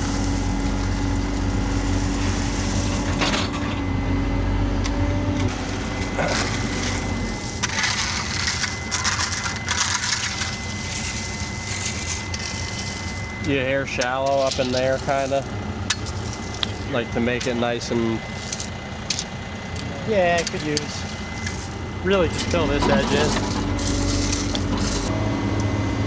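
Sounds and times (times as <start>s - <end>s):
dirt and gravel scraping: 0.0s - 3.9s, 4.8s - 25.3s
machine engine running: 0.0s - 26.0s.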